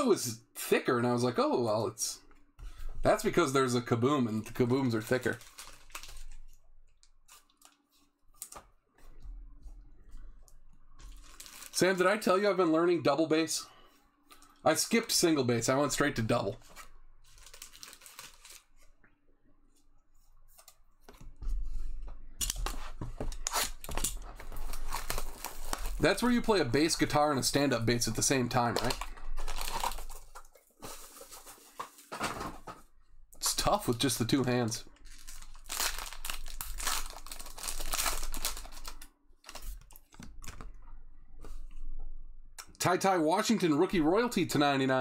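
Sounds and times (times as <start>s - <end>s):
trading cards rustling and sliding: 16.6s - 18.9s, 22.6s - 32.1s, 35.1s - 40.6s.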